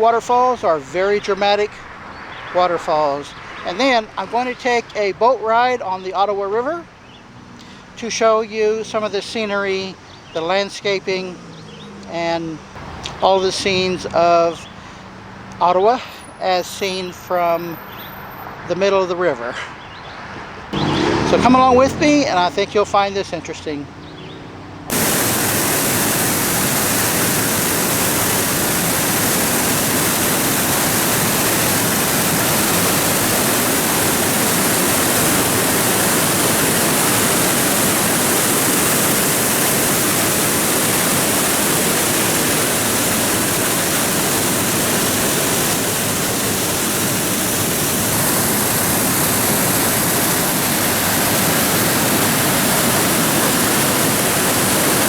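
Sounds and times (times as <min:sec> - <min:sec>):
water rushing over falls: 0:00.0 - 0:06.1, 0:20.8 - 0:22.6, 0:24.9 - 0:55.0.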